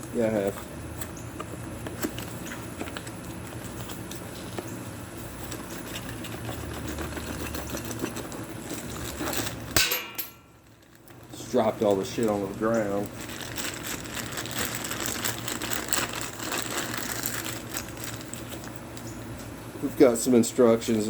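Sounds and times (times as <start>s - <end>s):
clicks and rattles of parts handled: 5.4s - 11.4s
parts clattering on floor: 7.5s - 10.5s.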